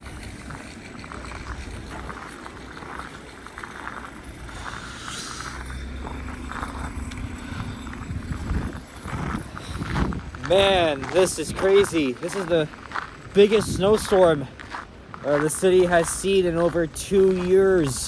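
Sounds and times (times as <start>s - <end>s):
vehicle engine running: 0.0s - 13.3s
footsteps in snow: 0.0s - 18.0s.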